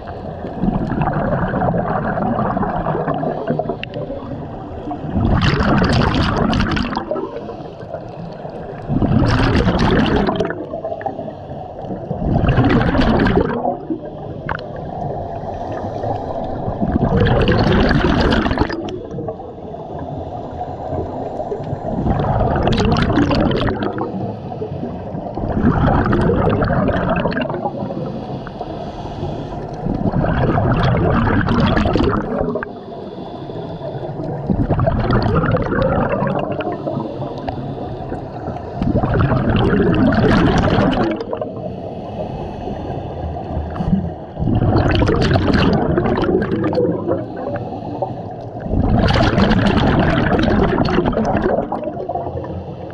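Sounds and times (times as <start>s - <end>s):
exhaled bubbles gurgling: 0.0s - 52.9s
regulator inhale hiss: 14.1s - 16.6s, 19.4s - 21.9s, 24.0s - 25.2s, 27.6s - 29.8s, 32.6s - 34.5s, 36.7s - 38.8s, 41.5s - 43.8s, 47.2s - 48.6s, 52.4s - 52.9s.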